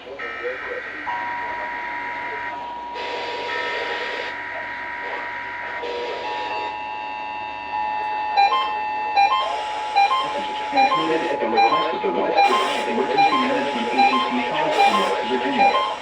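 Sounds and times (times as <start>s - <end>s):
steady electronic alert tones: 8.3s - 16.0s
quick repeated beeps: 8.4s - 16.0s
short electronic tones: 8.4s - 16.0s.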